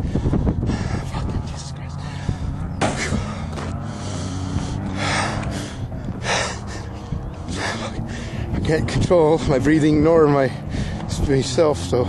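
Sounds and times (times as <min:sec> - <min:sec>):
man breathing heavily: 0:00.0 - 0:08.6, 0:10.4 - 0:11.2
sharp gasping breaths: 0:00.0 - 0:08.6, 0:10.6 - 0:11.1.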